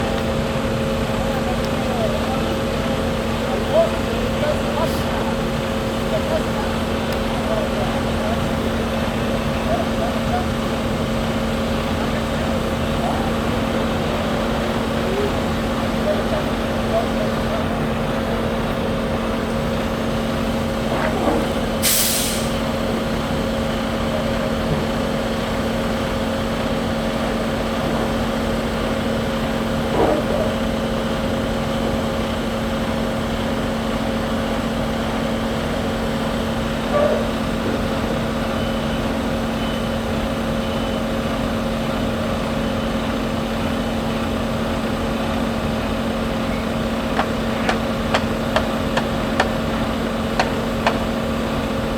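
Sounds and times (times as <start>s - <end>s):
diesel truck engine running: 0.0s - 51.9s
air brake hiss: 21.8s - 22.7s.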